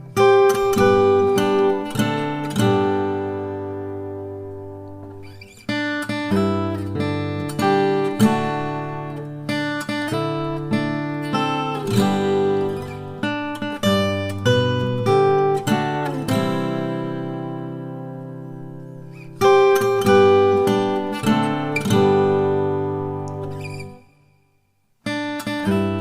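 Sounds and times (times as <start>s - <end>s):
acoustic guitar plucked and strummed: 0.0s - 24.4s, 25.0s - 26.0s.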